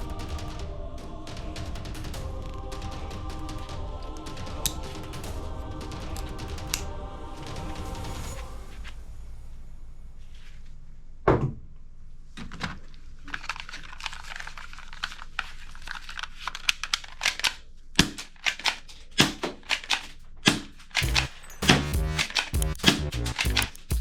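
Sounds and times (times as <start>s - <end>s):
toy gun mechanism clicking: 15.9s - 22.7s.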